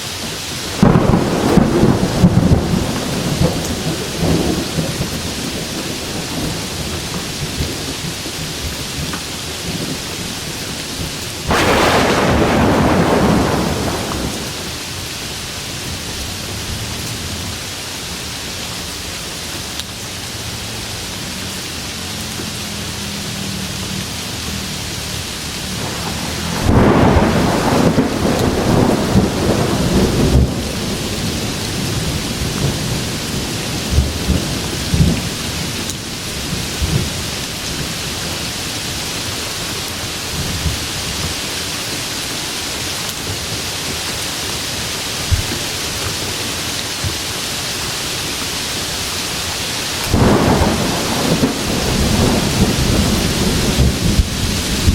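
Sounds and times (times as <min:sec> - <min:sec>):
steady rain hiss: 0:00.0 - 0:54.9
thunder rumbling and crackling: 0:00.6 - 0:15.0, 0:25.5 - 0:38.5, 0:50.0 - 0:54.9.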